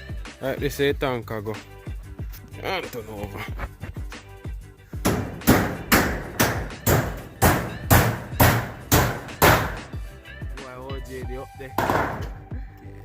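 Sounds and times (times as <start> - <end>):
hammer on metal roofing: 5.0 - 9.9, 11.8 - 12.4.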